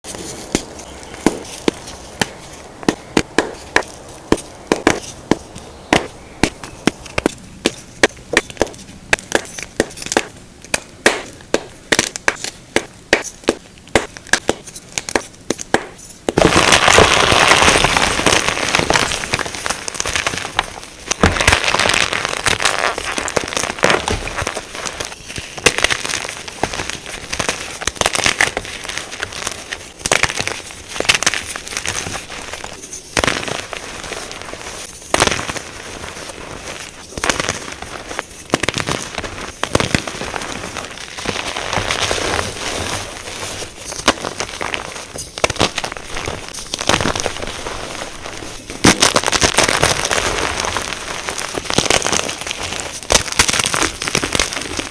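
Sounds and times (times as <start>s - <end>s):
chalk crunching and crackling: 0.0s - 54.9s
chalk blocks snapping: 0.1s - 16.4s.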